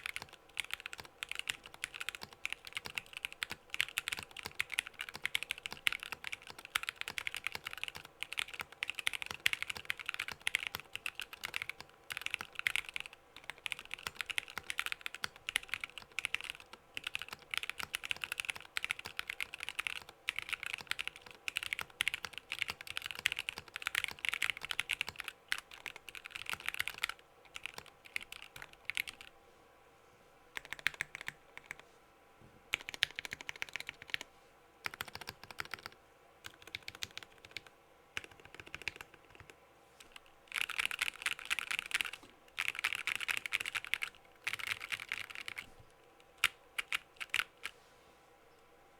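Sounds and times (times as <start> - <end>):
mechanical keyboard typing: 0.0 - 29.3, 30.6 - 31.8, 32.7 - 34.2, 34.8 - 45.7, 46.3 - 47.7.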